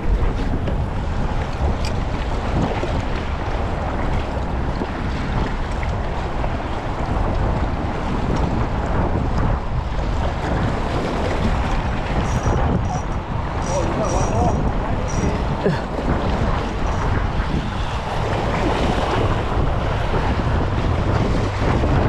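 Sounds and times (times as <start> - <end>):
wind buffeting microphone: 0.0 - 22.0
lapping water: 10.1 - 20.0.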